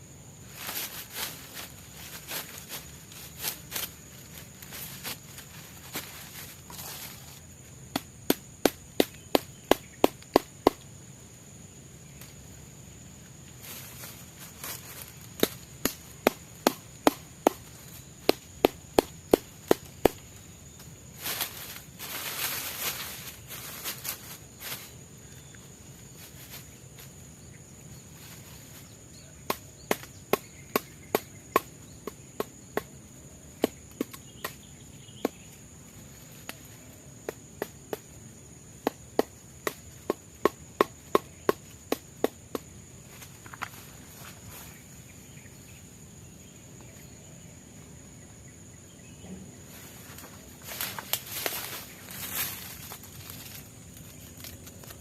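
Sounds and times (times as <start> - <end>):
high insect drone: 0.0 - 55.0
chopping strikes on wood: 7.9 - 10.8, 15.4 - 20.2, 29.5 - 32.9, 38.8 - 42.7.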